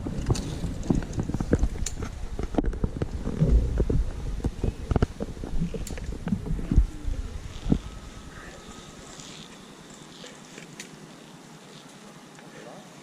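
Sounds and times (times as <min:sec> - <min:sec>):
low rumbling handling noise: 0:00.0 - 0:09.6.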